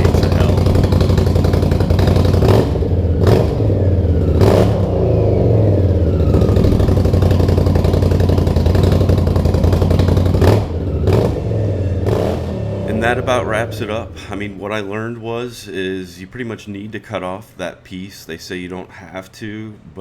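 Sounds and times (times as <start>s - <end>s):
motorcycle engine revving: 0.0s - 15.5s.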